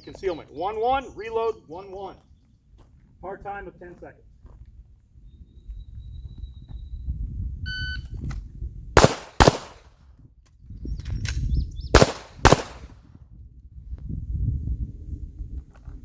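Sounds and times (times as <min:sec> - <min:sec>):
handgun shots: 0:09.0 - 0:09.8, 0:12.0 - 0:12.9
magazine reload clicks: 0:12.0 - 0:12.9.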